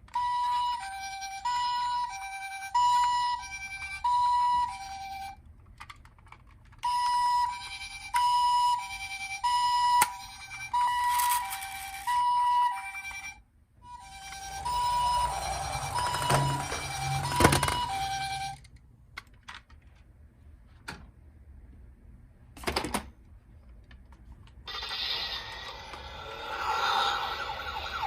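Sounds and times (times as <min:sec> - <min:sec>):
toy two-tone siren: 0:00.1 - 0:05.4, 0:06.8 - 0:18.6, 0:24.7 - 0:28.0.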